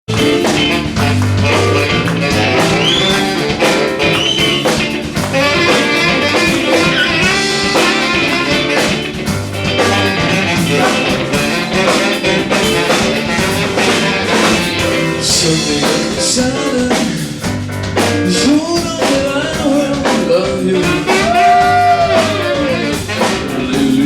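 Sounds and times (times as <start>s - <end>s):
lead guitar bent notes: 0.1s - 15.2s
rock band playing: 0.1s - 24.0s.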